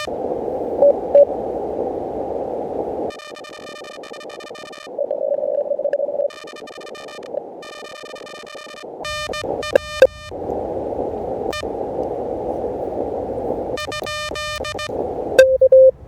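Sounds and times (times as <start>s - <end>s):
radio receiver hiss: 0.0s - 16.0s
buzzy morse code tone: 3.0s - 10.4s, 11.4s - 11.8s, 12.6s - 16.0s.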